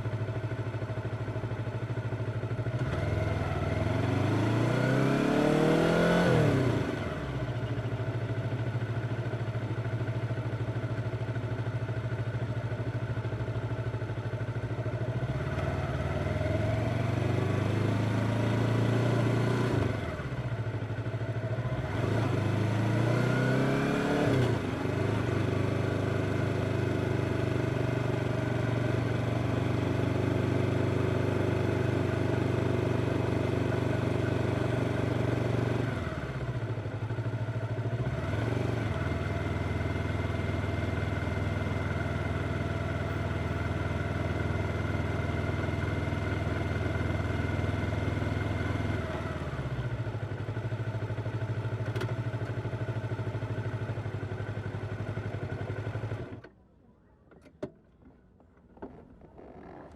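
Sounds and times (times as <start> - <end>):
motorcycle engine revving: 2.5 - 8.0, 14.8 - 56.5.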